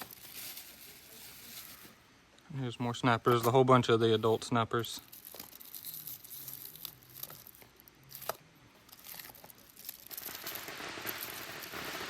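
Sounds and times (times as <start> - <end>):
plastic packaging crinkling: 0.0 - 2.0, 5.0 - 12.0
steady hiss: 0.0 - 12.0.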